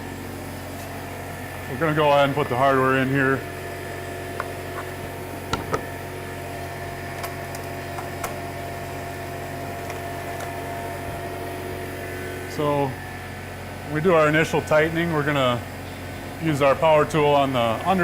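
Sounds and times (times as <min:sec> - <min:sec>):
steady electrical hum: 0:00.0 - 0:18.0.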